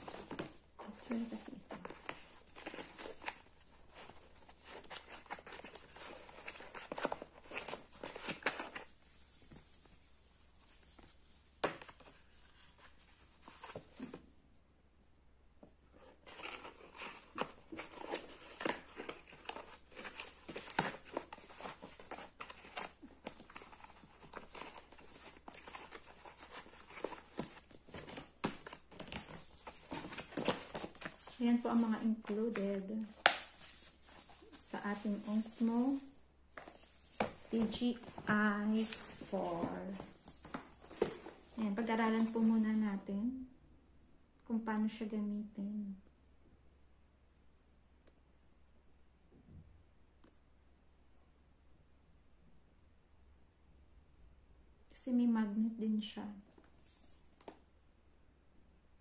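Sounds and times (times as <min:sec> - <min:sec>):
packaging crinkling and rustling: 0:00.0 - 0:09.1, 0:16.2 - 0:36.0, 0:36.6 - 0:42.4.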